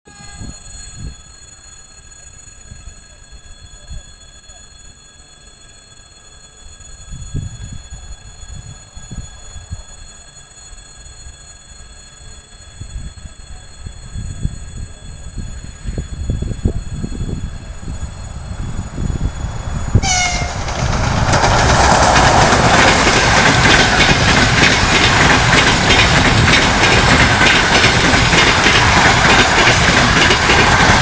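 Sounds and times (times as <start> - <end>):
train rumble: 12.2 - 31.0
wheels clacking over rail joints: 20.0 - 31.0.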